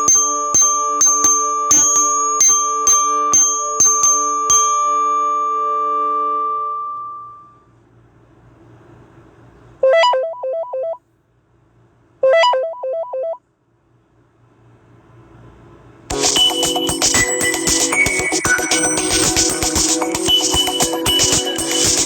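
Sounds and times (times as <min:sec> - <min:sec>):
bell-like chime ringtone: 0:00.0 - 0:07.5, 0:16.1 - 0:22.0
ringtone of alternating notes: 0:00.0 - 0:07.5, 0:16.1 - 0:22.0.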